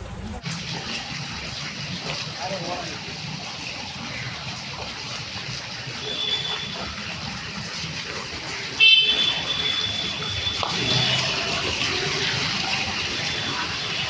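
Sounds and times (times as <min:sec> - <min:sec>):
traffic noise: 0:00.0 - 0:14.0
vehicle horn honking: 0:06.0 - 0:06.8, 0:08.8 - 0:11.4.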